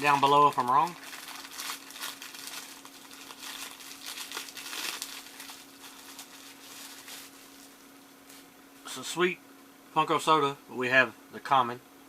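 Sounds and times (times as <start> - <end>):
plastic wrapping crinkling: 0.0 - 7.8.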